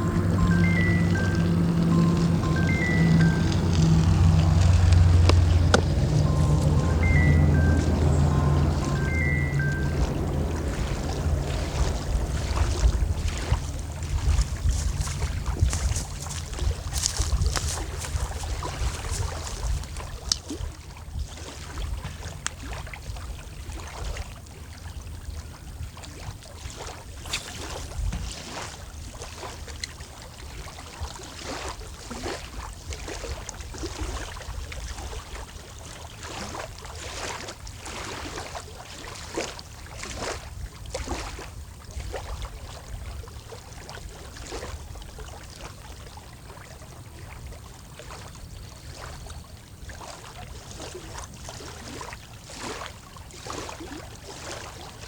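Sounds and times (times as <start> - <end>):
wind buffeting microphone: 0.0 - 20.5
waves lapping against shore: 0.0 - 55.0.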